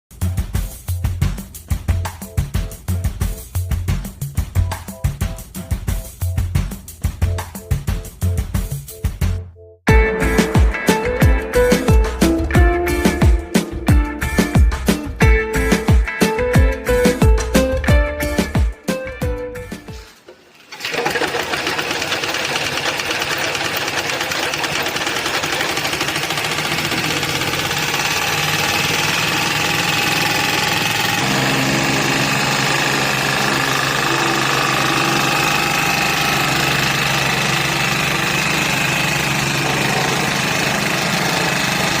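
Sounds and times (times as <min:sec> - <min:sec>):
plate compactor running: 0:20.7 - 0:42.0.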